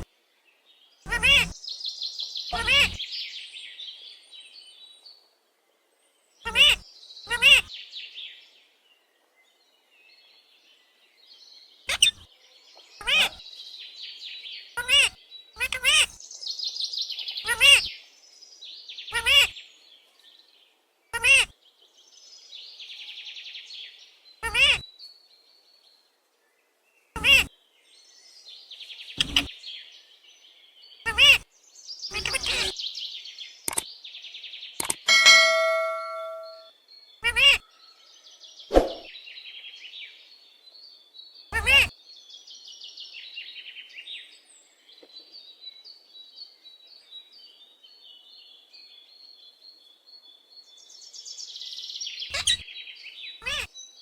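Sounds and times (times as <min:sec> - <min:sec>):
parrot loud short calls: 0:01.1 - 0:01.5, 0:02.6 - 0:03.0, 0:53.4 - 0:53.7
parrot harsh calls: 0:01.1 - 0:01.6, 0:02.6 - 0:03.0, 0:06.5 - 0:07.7, 0:11.9 - 0:12.2, 0:13.0 - 0:13.4, 0:14.8 - 0:16.2, 0:17.5 - 0:17.9, 0:19.1 - 0:19.5, 0:21.2 - 0:21.5, 0:24.4 - 0:24.8, 0:27.2 - 0:27.5, 0:31.1 - 0:31.4, 0:32.1 - 0:32.7, 0:35.1 - 0:37.6, 0:41.6 - 0:41.9, 0:52.3 - 0:52.6, 0:53.4 - 0:53.7
faint chirping: 0:35.1 - 0:37.6.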